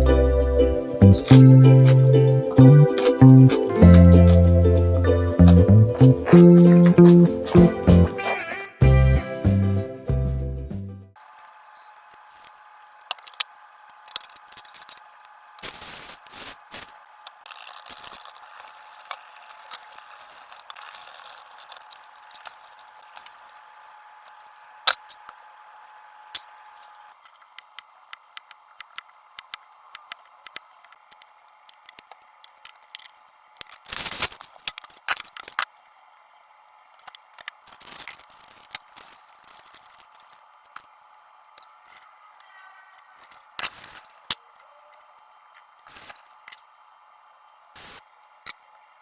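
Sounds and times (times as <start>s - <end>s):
faint steady hum: 0.0s - 9.3s.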